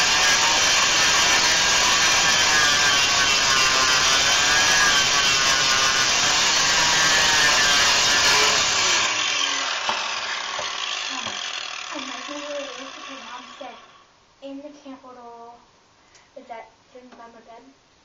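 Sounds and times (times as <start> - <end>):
angle grinder grinding metal: 0.0 - 14.1.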